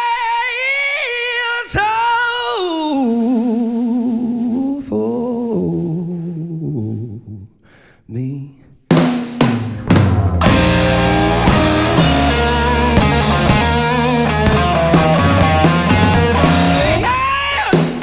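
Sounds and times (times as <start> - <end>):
drums: 8.9 - 18.0
bass guitar: 9.7 - 17.3
electric guitar: 9.8 - 17.3.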